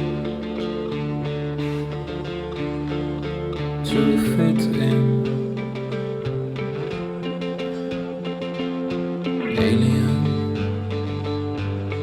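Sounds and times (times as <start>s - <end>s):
guitar song with steady beat: 0.0s - 12.0s.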